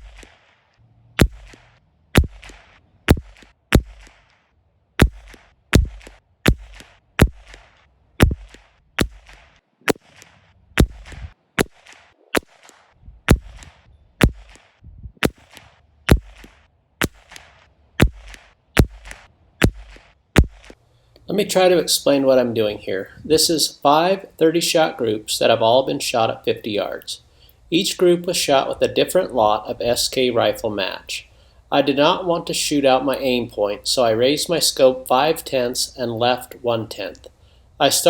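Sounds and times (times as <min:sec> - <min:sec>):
rifle shots: 0:01.2 - 0:04.3, 0:05.0 - 0:20.8.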